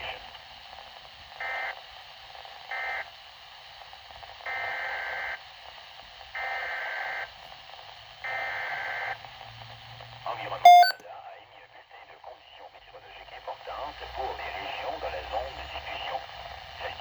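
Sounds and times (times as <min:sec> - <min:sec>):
electronic alert beeps: 0:10.7 - 0:11.0.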